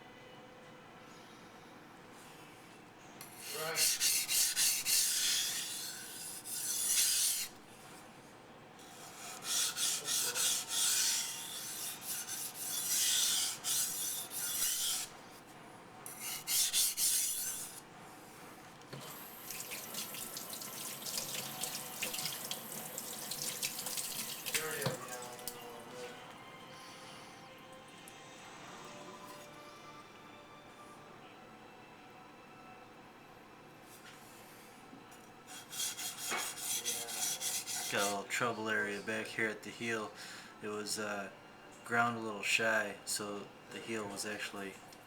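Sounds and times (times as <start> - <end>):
knife scraping on whetstone: 3.2 - 7.6, 8.8 - 15.2, 16.1 - 17.8, 35.5 - 38.2.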